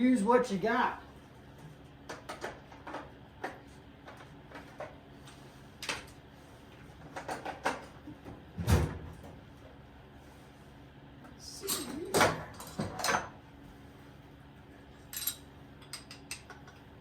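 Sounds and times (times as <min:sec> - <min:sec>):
hand tools clinking on metal: 0:15.1 - 0:16.5.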